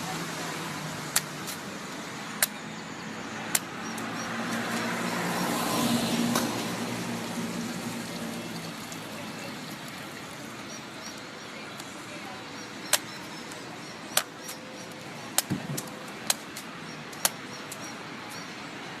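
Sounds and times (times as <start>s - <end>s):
motor vehicle passing: 0.0s - 11.0s.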